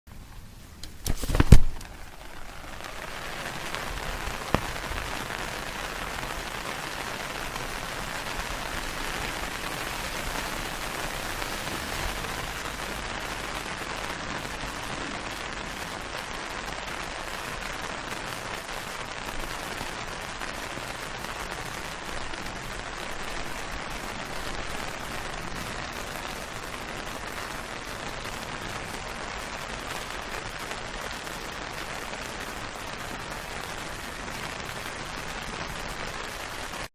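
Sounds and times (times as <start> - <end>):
rain on umbrella canopy: 0.1 - 36.9
umbrella opening snap: 0.8 - 2.0.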